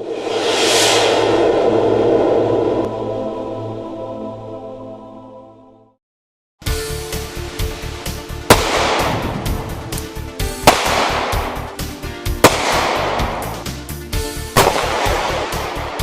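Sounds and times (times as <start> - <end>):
music with a steady beat: 6.6 - 16.0.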